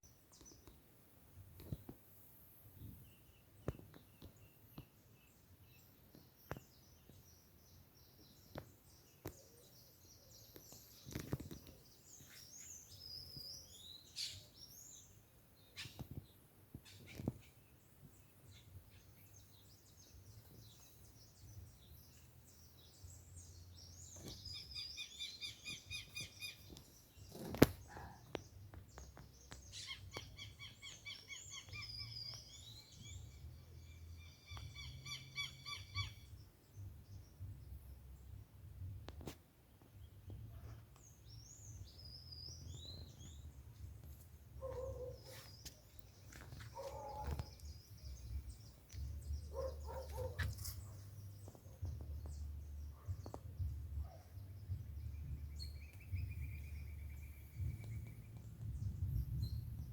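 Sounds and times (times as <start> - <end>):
birds chirping and calling: 8.5 - 17.7, 18.3 - 36.6, 40.5 - 59.9.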